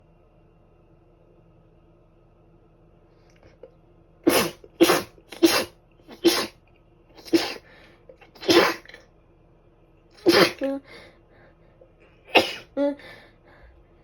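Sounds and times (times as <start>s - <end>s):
person sneezing: 4.3s - 6.6s, 7.2s - 9.0s, 10.2s - 11.0s, 12.3s - 13.0s.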